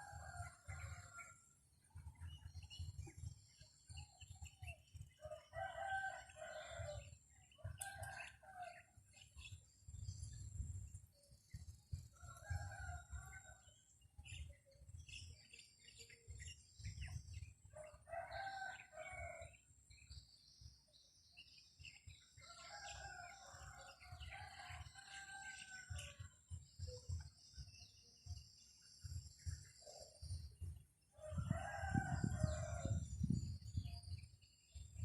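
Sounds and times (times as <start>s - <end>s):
wind rumble on microphone: 0.0s - 21.0s, 22.0s - 35.0s
rooster crowing: 5.3s - 7.0s, 31.2s - 33.0s.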